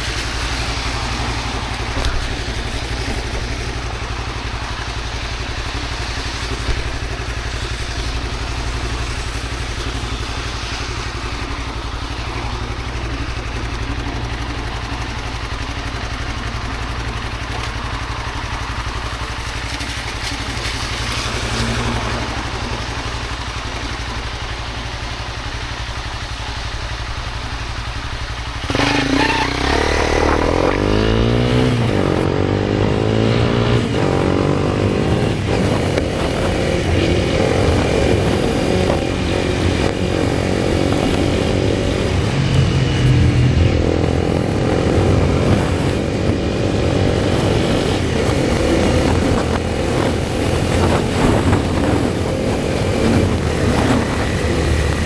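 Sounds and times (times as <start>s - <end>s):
rain hissing: 0.0s - 30.2s
low engine hum: 0.0s - 55.0s
motorbike passing: 0.0s - 55.0s.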